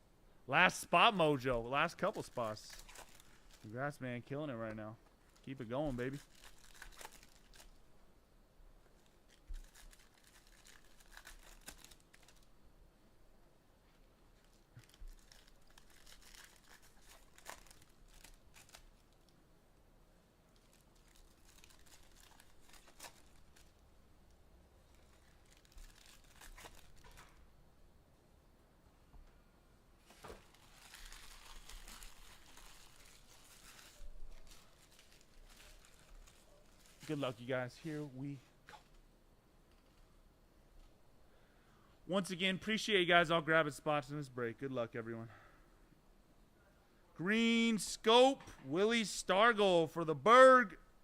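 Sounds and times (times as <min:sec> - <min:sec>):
card packs crinkling and rustling: 0:00.6 - 0:07.8, 0:09.0 - 0:12.5, 0:14.4 - 0:19.3, 0:20.6 - 0:23.9, 0:24.8 - 0:27.4, 0:30.0 - 0:39.0.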